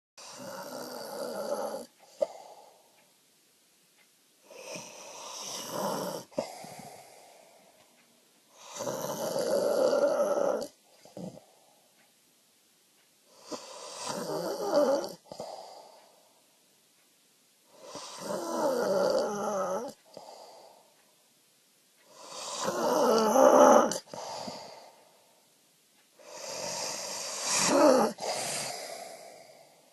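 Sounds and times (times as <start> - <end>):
person snoring loudly: 0.2 - 2.5, 4.5 - 7.2, 8.6 - 11.4, 13.4 - 15.8, 17.8 - 20.5, 22.1 - 24.9, 26.2 - 29.7
soft breath out: 2.0 - 3.1, 6.3 - 8.0, 20.0 - 21.1, 24.0 - 25.6, 26.2 - 29.9.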